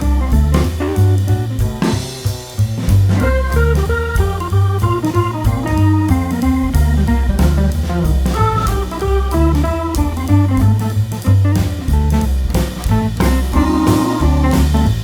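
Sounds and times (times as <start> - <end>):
instrumental jazz music: 0.0 - 15.0.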